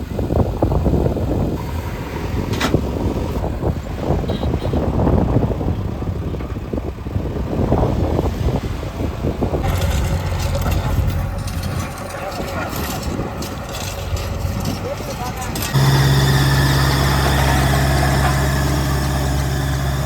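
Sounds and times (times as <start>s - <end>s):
diesel engine rumbling: 0.1s - 20.0s
hissing rattle: 9.6s - 20.0s.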